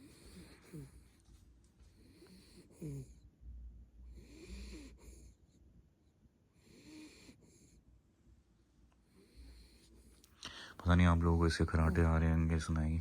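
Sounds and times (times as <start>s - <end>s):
dog breathing in its sleep: 0.0s - 1.3s, 1.9s - 3.2s, 4.1s - 5.4s, 9.1s - 10.8s.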